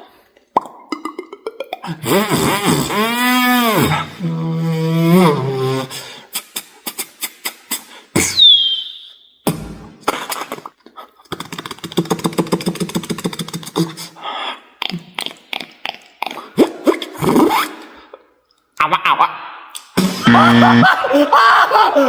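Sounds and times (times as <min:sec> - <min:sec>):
person beatboxing: 0:00.9 - 0:08.5, 0:09.5 - 0:10.7, 0:11.3 - 0:14.2, 0:14.8 - 0:17.9, 0:18.8 - 0:20.8.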